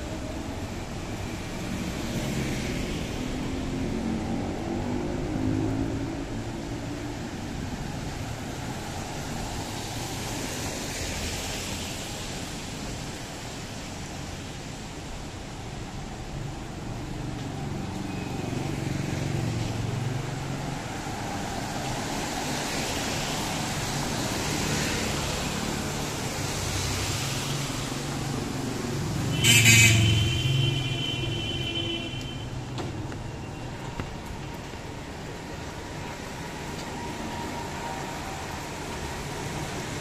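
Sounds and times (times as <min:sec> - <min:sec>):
vehicle horn honk: 0:29.3 - 0:32.4.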